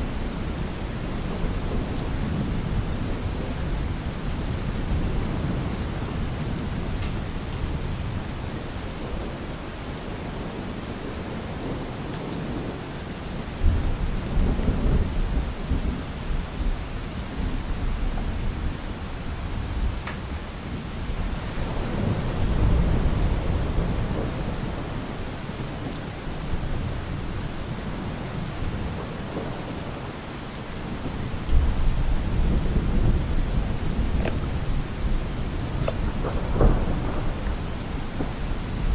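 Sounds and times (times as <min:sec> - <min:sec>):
steady rain: 0:00.0 - 0:38.9
thunder rolling: 0:10.4 - 0:30.1, 0:30.7 - 0:38.9.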